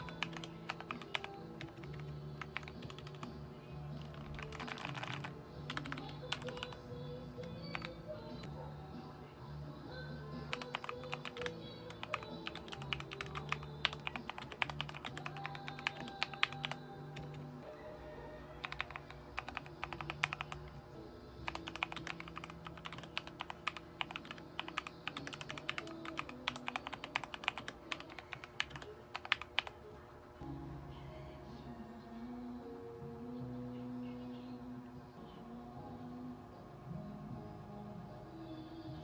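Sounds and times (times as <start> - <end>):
mechanical keyboard typing: 0.0 - 3.3, 4.0 - 6.8, 7.4 - 7.9, 10.5 - 17.4, 18.6 - 20.8, 21.4 - 29.8
background music: 0.0 - 39.0.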